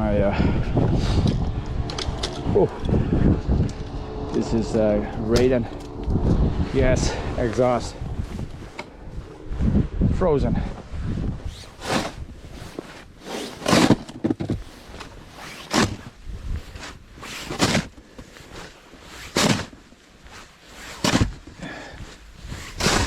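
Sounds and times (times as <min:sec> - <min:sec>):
snow shovel scraping snow: 0:06.8 - 0:09.8, 0:11.4 - 0:23.0.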